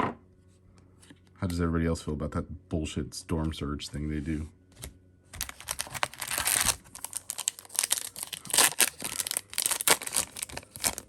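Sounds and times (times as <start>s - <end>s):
wrapper tearing and crinkling: 5.4s - 11.0s.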